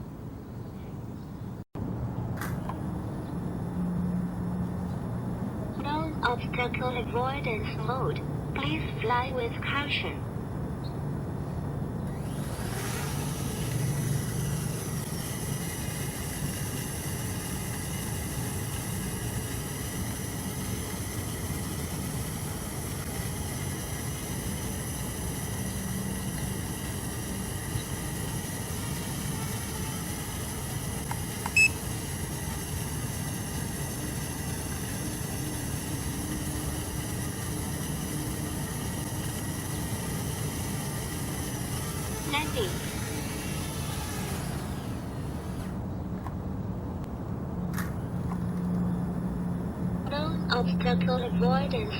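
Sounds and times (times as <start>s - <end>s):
drone motors whining: 10.7s - 47.1s.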